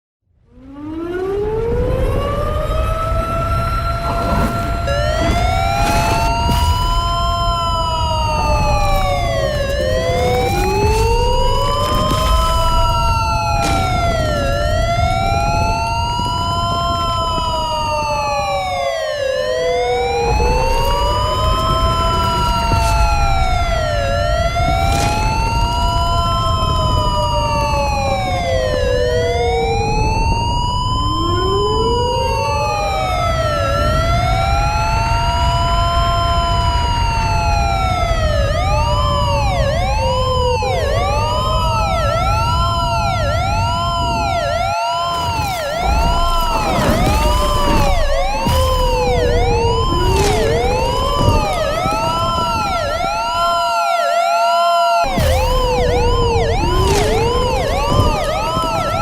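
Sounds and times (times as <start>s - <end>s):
emergency sirens wailing: 0.3s - 59.0s
low rumble: 1.8s - 31.7s, 45.2s - 53.6s, 55.1s - 59.0s.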